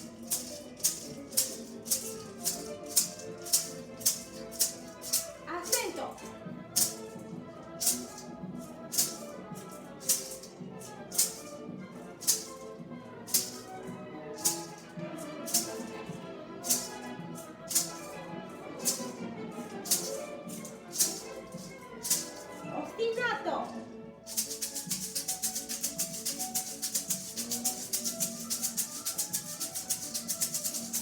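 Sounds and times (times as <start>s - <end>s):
maraca shaking: 0.0s - 31.0s
symphony orchestra music: 0.0s - 31.0s.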